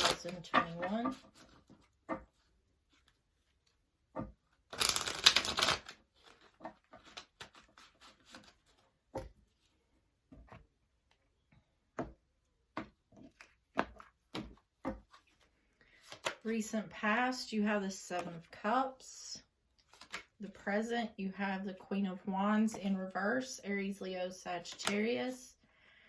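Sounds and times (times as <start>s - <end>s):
cards being shuffled: 0.0s - 1.9s, 4.7s - 8.9s, 13.3s - 16.4s, 19.8s - 20.6s, 24.8s - 25.0s.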